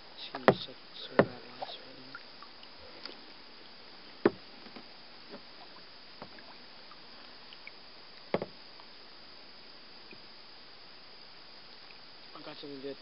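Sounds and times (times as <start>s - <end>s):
faint hiss: 0.0s - 13.0s
sharp knocks on boat: 0.4s - 1.6s, 4.2s - 5.4s, 8.3s - 8.6s.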